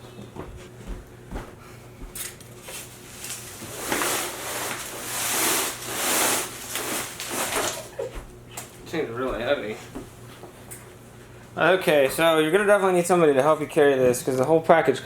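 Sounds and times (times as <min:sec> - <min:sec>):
cardboard scraping and rustling: 0:02.6 - 0:08.0.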